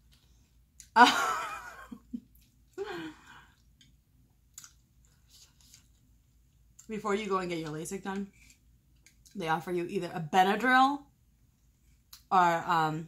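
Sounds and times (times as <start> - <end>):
woman sighing: 2.8 - 3.6.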